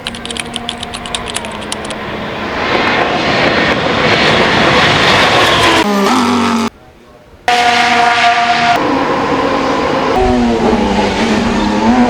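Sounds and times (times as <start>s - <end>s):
racing car engine rush: 7.5s - 12.0s.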